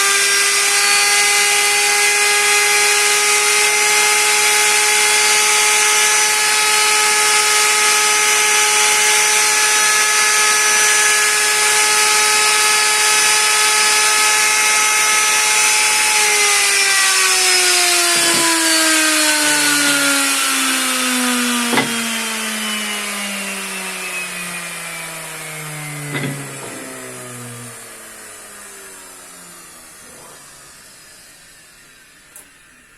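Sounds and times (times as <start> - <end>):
power tool motor whining: 0.0 - 32.8
sharp knocks: 18.0 - 18.8, 21.7 - 22.1, 26.0 - 27.0.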